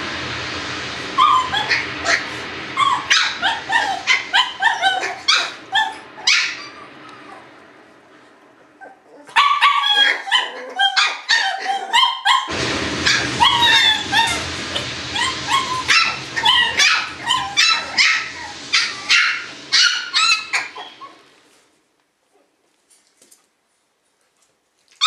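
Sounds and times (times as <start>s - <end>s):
steady rushing noise: 0.0s - 9.7s, 12.5s - 21.8s
puppies yipping and whining: 2.8s - 7.4s, 8.8s - 12.5s, 15.2s - 21.2s.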